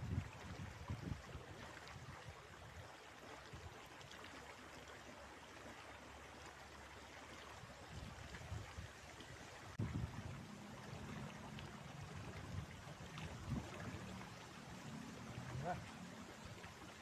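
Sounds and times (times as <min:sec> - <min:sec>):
wind buffeting microphone: 0:00.0 - 0:02.8, 0:09.7 - 0:11.1, 0:11.9 - 0:14.2
river water running over rocks: 0:00.0 - 0:17.0.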